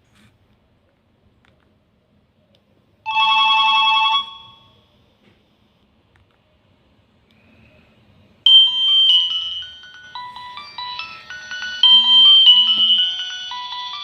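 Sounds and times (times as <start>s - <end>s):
polyphonic phone ringtone: 3.1s - 4.8s, 8.5s - 14.0s.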